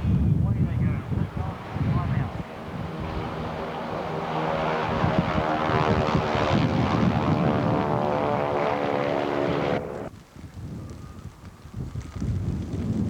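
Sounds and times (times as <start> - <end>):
propeller aircraft engine: 0.0 - 10.1.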